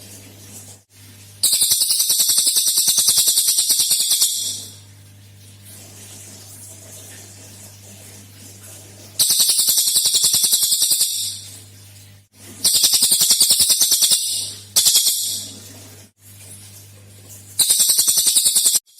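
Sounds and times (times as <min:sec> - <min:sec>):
songbird trilling: 0:01.4 - 0:04.7, 0:09.2 - 0:11.4, 0:12.7 - 0:15.4, 0:17.6 - 0:18.8.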